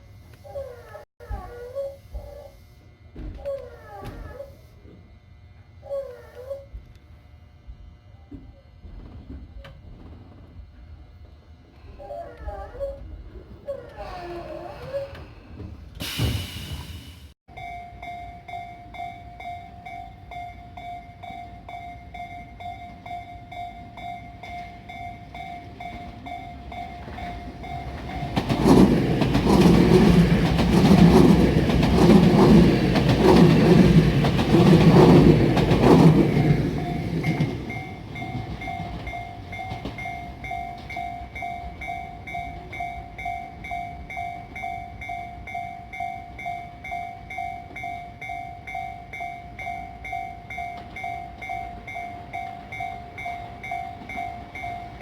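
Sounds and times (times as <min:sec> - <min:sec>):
train passing: 0:15.4 - 0:55.0
level-crossing warning bell ringing: 0:17.5 - 0:55.0.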